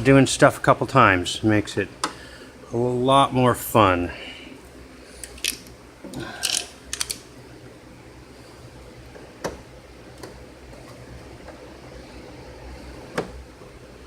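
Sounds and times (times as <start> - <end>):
faint steady hum: 0.0 - 14.0
tools clicking and knocking: 5.2 - 5.7, 6.4 - 7.2.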